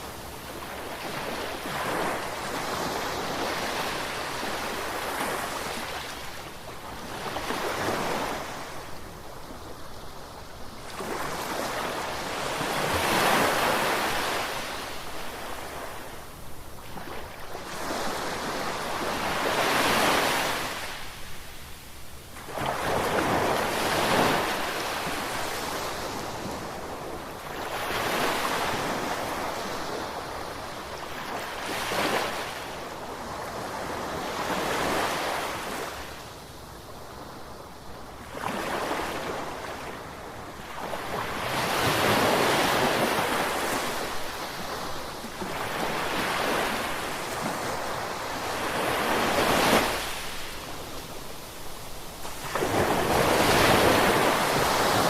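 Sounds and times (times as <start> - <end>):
ocean waves breaking on shore: 0.0 - 21.8, 37.0 - 55.0.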